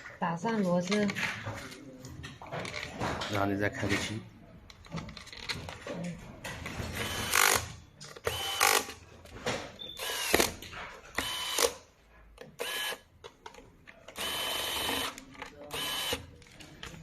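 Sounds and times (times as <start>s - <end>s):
electric screwdriver whining: 7.0s - 9.0s, 10.0s - 10.6s, 11.2s - 11.8s, 12.6s - 13.0s, 14.1s - 16.2s.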